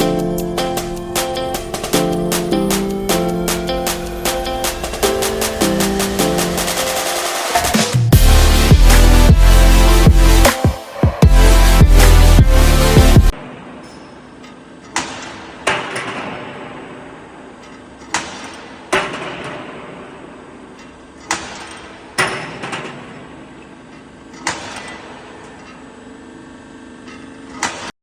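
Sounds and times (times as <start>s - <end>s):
wire drawing machine humming: 0.0s - 13.3s.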